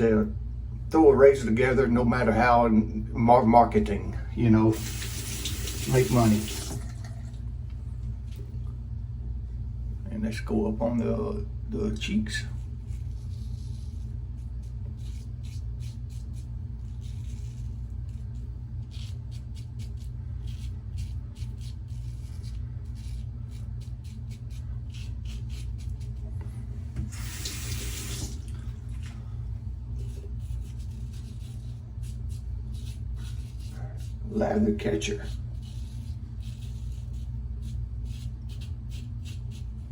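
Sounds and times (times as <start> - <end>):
steady low hum: 0.0 - 39.9
water tap running: 4.7 - 7.4, 27.0 - 29.0
razor scraping stubble: 12.6 - 28.5, 30.0 - 39.9.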